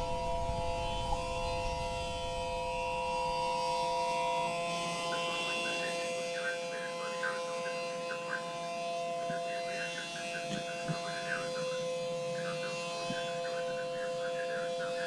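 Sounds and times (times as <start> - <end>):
faint flickering chirps: 0.0 - 4.1
low rumble: 0.0 - 4.6.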